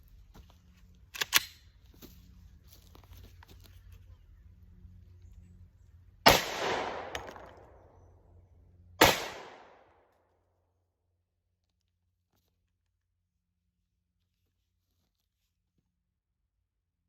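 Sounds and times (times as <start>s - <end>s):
pistol shots: 6.3s - 7.9s, 9.0s - 9.9s.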